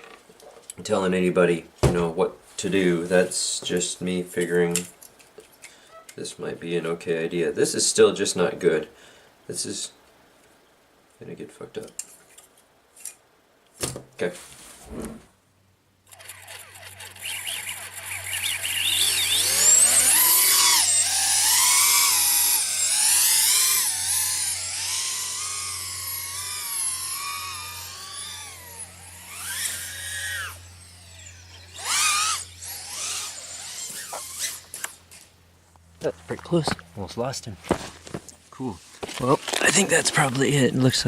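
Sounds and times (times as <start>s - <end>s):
quadcopter motors whining: 16.1s - 35.3s.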